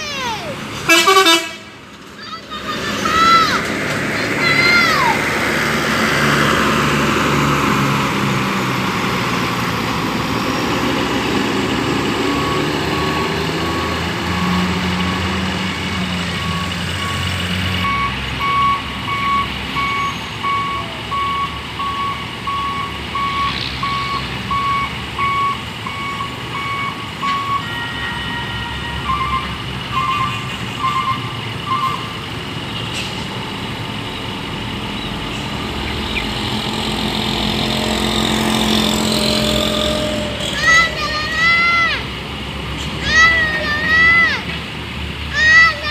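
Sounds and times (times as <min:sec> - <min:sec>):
diesel engine running: 0:00.0 - 0:45.9
reversing alarm beeping: 0:12.2 - 0:32.2, 0:38.8 - 0:40.9.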